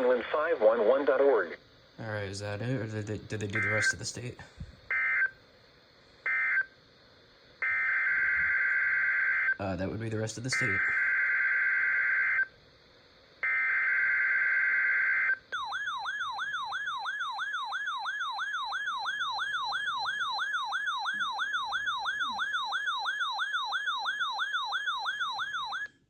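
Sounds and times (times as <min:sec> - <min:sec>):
warbling siren-like alert tone: 0:13.5 - 0:25.9.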